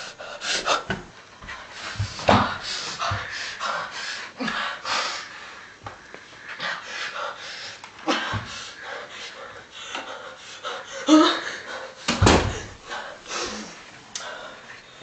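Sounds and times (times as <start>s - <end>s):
person breathing noisily: 1.6s - 14.8s.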